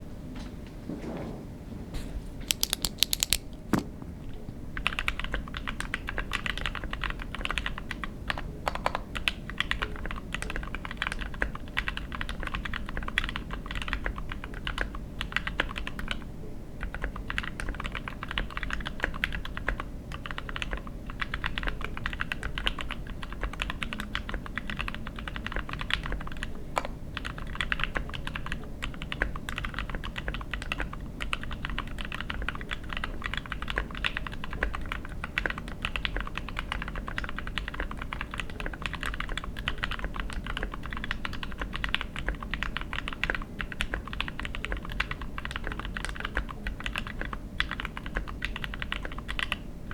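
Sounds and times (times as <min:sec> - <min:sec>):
mechanical keyboard typing: 0:02.5 - 0:03.9, 0:04.8 - 0:16.2, 0:16.8 - 0:26.5, 0:27.2 - 0:49.6.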